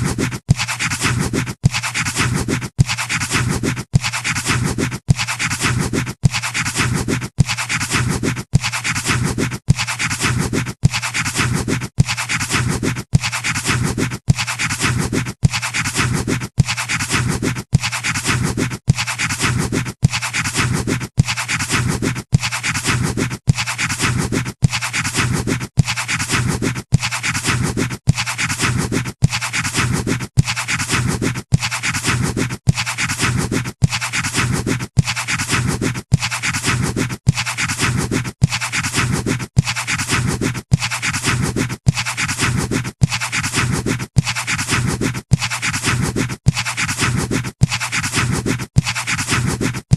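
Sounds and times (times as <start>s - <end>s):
pencil scratching on paper: 0.0s - 49.9s.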